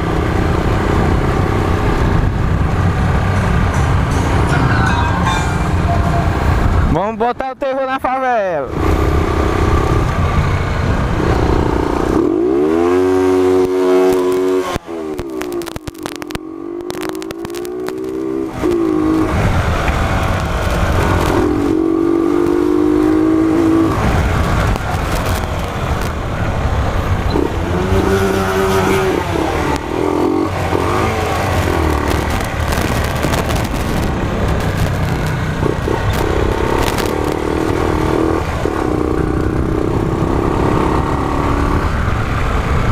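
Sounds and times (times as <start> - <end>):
motorcycle engine revving: 8.7 - 42.9.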